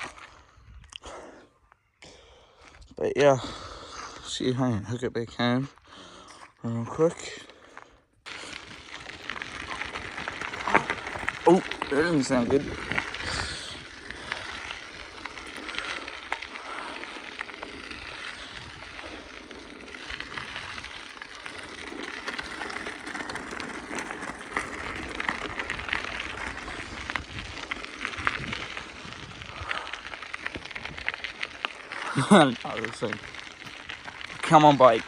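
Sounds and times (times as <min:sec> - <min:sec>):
bicycle tyres rolling on road: 0:00.0 - 0:01.5, 0:02.1 - 0:35.0
bicycle clicks and rattles: 0:08.3 - 0:35.0.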